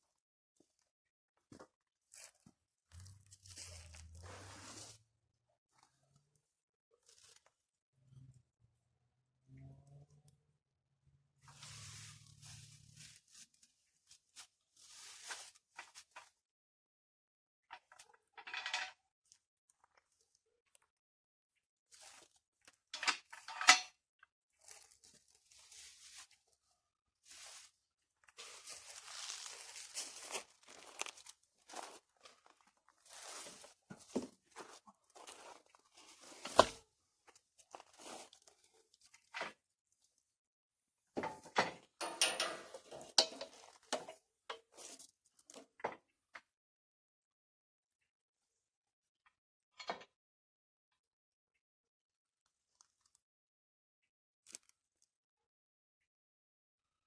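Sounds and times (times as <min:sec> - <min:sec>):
rustling scrapes and shuffles: 0:03.0 - 0:05.0, 0:11.5 - 0:16.1, 0:24.7 - 0:26.4, 0:27.3 - 0:27.8, 0:28.4 - 0:31.1, 0:33.0 - 0:36.8
metal clinks and knocks: 0:41.2 - 0:43.6.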